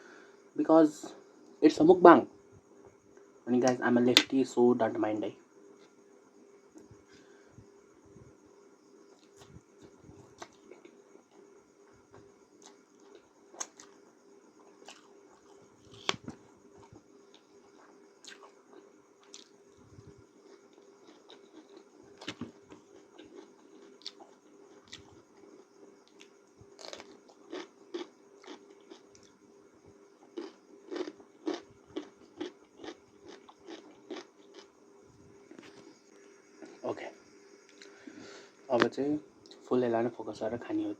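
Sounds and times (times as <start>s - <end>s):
faint steady hum: 0.0s - 40.9s
person chewing noodles: 14.8s - 29.3s, 30.2s - 34.7s.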